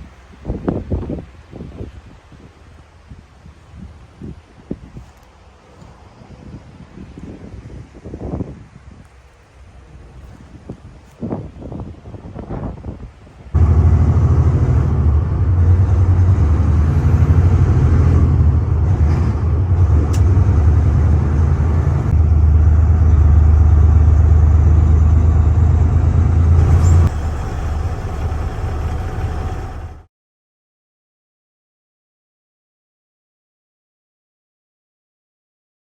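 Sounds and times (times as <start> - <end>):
truck diesel engine rumbling: 13.6 - 30.1.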